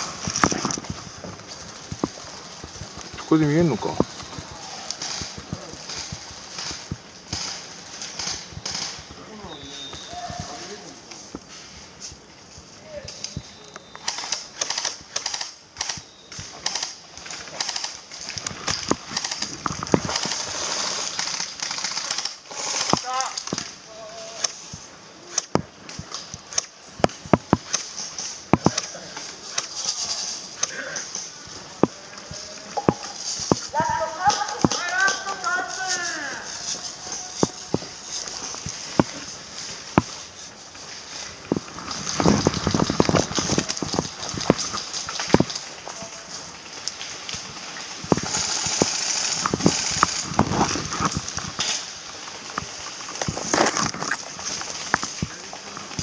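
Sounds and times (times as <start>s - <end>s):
rustling hiss: 0.0s - 56.0s
airsoft guns firing: 3.8s - 10.1s, 14.0s - 29.8s
footsteps and knocks: 31.8s - 35.4s.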